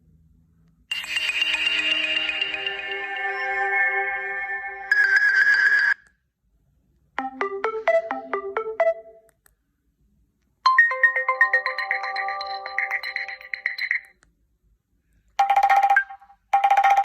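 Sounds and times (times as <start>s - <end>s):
phone ringtone melodies: 0.9s - 6.0s, 7.2s - 9.3s, 10.7s - 14.1s, 15.4s - 17.0s.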